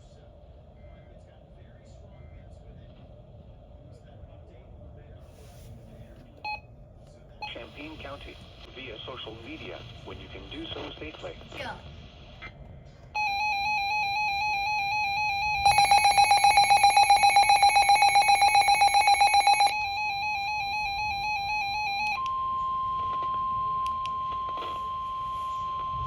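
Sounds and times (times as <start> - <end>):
rapid pulsing beep: 13.2 - 26.0
steady alarm tone: 13.2 - 26.0
warbling electronic alarm: 13.2 - 26.0.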